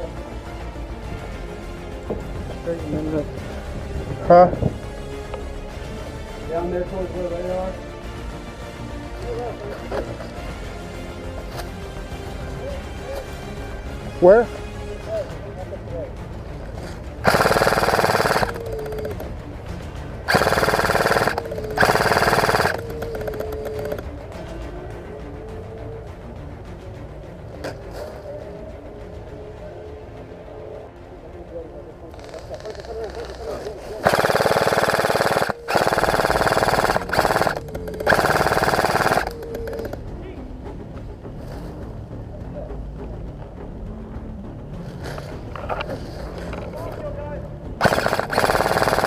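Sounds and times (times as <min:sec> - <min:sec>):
airsoft gun firing bursts: 0:17.2 - 0:19.2, 0:20.3 - 0:24.0, 0:34.0 - 0:40.0, 0:47.8 - 0:49.0.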